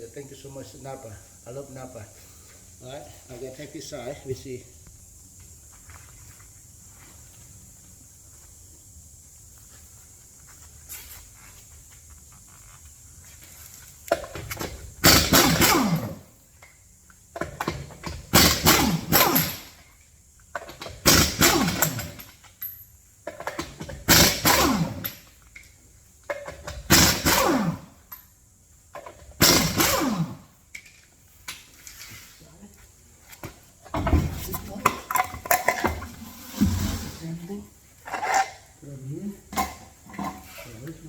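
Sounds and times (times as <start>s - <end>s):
power wrench spinning lug nuts: 14.2s - 16.3s, 17.4s - 19.9s, 20.6s - 22.6s, 23.3s - 25.4s, 26.4s - 28.3s, 29.0s - 30.9s.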